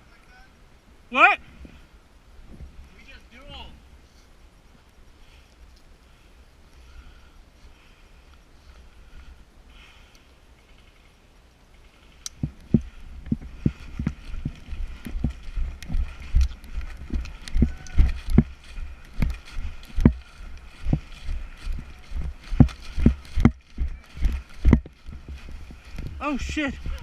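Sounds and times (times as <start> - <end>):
footsteps walking on ground: 12.3 - 27.0.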